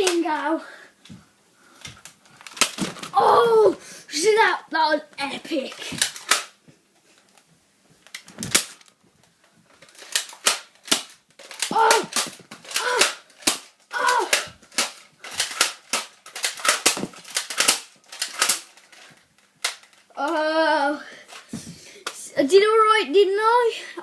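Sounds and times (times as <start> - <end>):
toy blaster plastic clacks and pops: 5.6 - 6.6, 8.1 - 8.9, 9.8 - 20.4.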